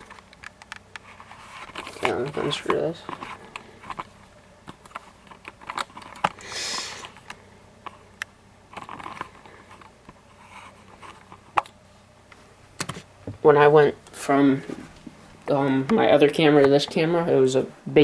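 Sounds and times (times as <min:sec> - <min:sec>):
rubbing hiss: 0:06.4 - 0:07.2.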